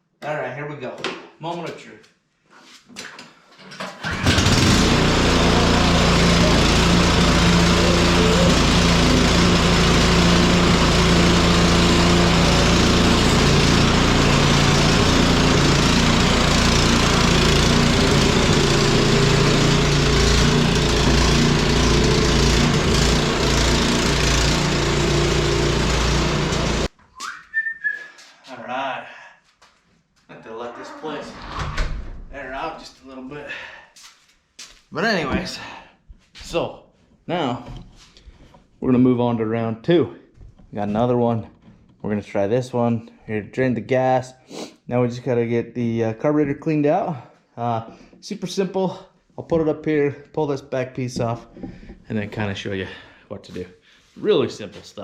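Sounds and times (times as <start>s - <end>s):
snow blower engine running: 4.0s - 26.9s.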